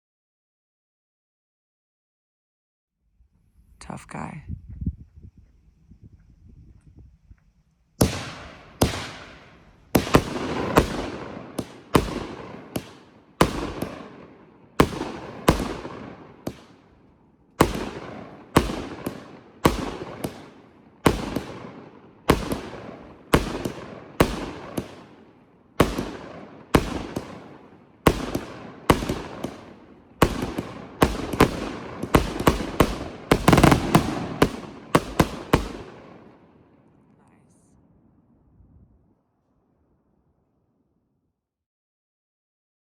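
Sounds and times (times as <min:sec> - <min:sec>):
firework cake bangs: 0:08.0 - 0:14.2, 0:28.1 - 0:35.9.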